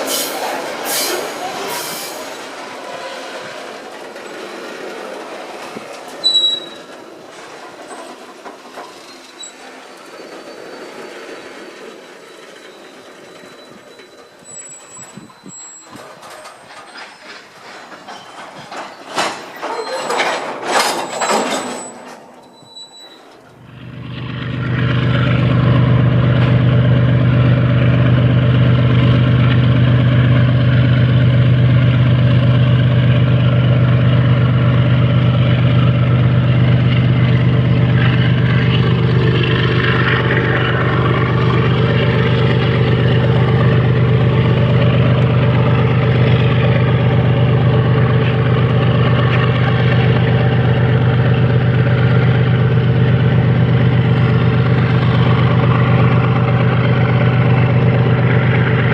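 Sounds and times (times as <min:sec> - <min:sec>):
diesel locomotive engine drone: 0:00.0 - 0:58.9.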